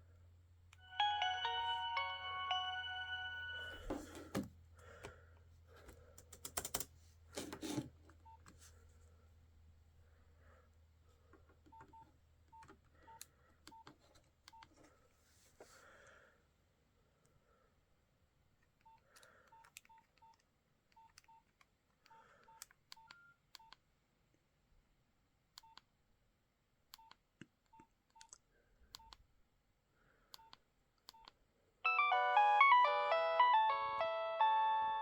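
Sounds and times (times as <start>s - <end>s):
polyphonic ringtone melody: 0.8s - 4.2s, 31.9s - 35.0s.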